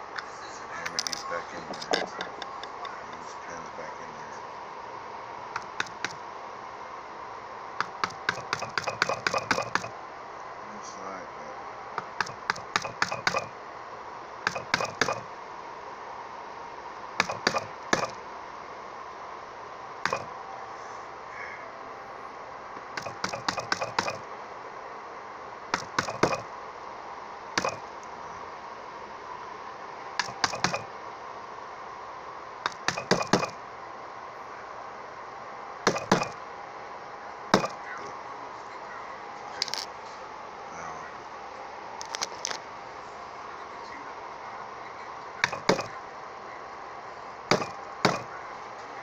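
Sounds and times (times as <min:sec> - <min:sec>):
small hammer tapping pins: 0:05.6 - 0:06.2, 0:07.8 - 0:10.0, 0:12.0 - 0:13.5, 0:14.5 - 0:15.3, 0:17.2 - 0:18.2, 0:20.0 - 0:20.3, 0:22.8 - 0:24.2, 0:25.7 - 0:26.5, 0:27.6 - 0:27.9, 0:30.2 - 0:30.9, 0:32.6 - 0:33.6, 0:35.9 - 0:36.4, 0:37.6 - 0:37.8, 0:45.4 - 0:46.0, 0:47.5 - 0:48.3.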